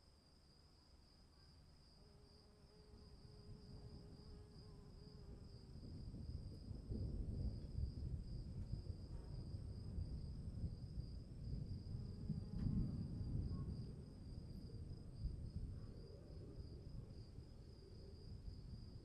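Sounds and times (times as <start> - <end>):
low storm rumble: 4.9 - 19.0.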